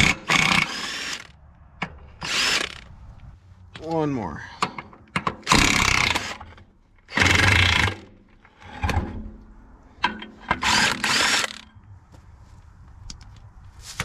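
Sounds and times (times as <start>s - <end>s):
power tool spinning bolts: 0.0s - 1.3s, 2.2s - 2.9s, 5.1s - 8.8s, 10.4s - 11.7s.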